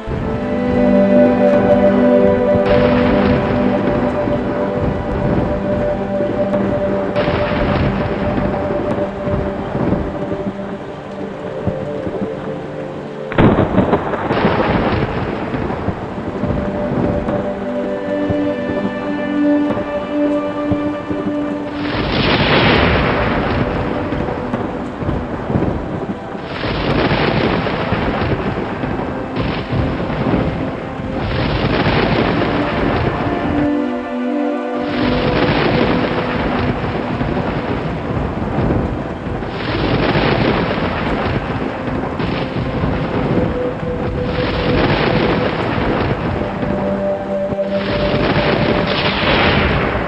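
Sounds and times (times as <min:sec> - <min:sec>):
thunder rumbling: 0:00.0 - 0:12.7, 0:13.3 - 0:33.7, 0:34.9 - 0:50.0
rain: 0:00.0 - 0:50.0
soft background music: 0:00.0 - 0:50.0.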